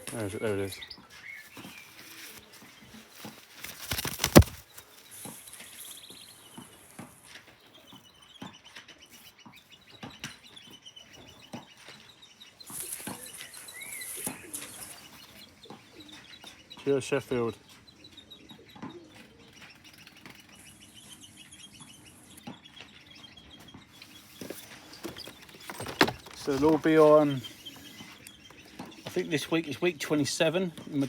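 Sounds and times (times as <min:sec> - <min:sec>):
rustling and clicking from handling: 0:01.1 - 0:07.6, 0:23.7 - 0:29.4
pigeon wings flapping: 0:02.0 - 0:05.0.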